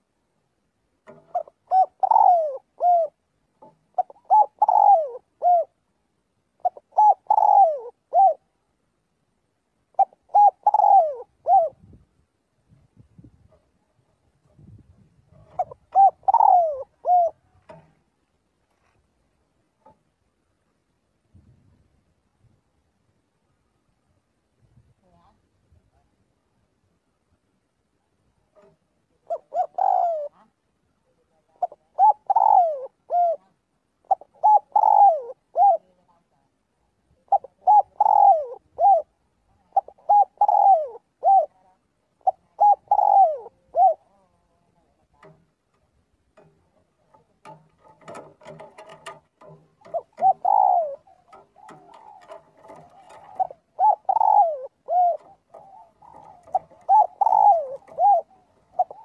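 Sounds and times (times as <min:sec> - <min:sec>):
background noise: 0:00.0 - 0:59.0
dove cooing: 0:01.0 - 0:05.9, 0:06.6 - 0:08.6, 0:09.9 - 0:12.0, 0:15.3 - 0:18.0, 0:28.6 - 0:30.5, 0:31.1 - 0:36.2, 0:37.2 - 0:45.5, 0:46.4 - 0:59.0.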